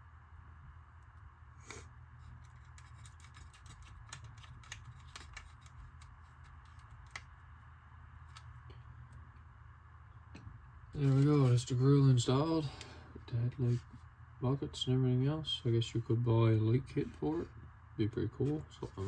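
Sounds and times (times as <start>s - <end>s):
low steady hum: 0.0s - 19.0s
plastic parts clicking and tapping: 2.4s - 7.3s.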